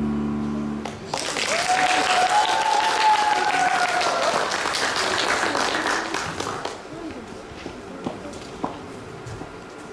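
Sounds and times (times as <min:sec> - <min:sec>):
audience applauding: 0:00.8 - 0:06.8
high-pitched cheer: 0:01.4 - 0:04.4.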